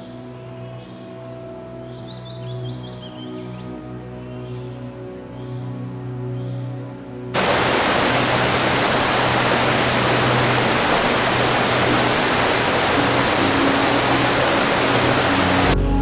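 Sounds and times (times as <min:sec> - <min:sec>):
water rushing: 0:07.4 - 0:16.0.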